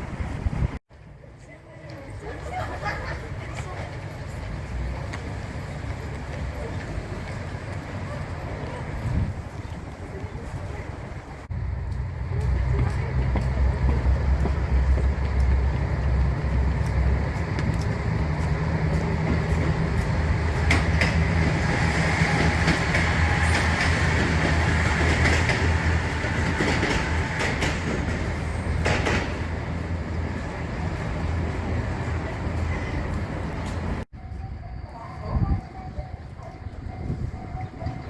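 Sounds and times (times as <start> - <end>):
rail vehicle rumbling on tracks: 0.0 - 38.0.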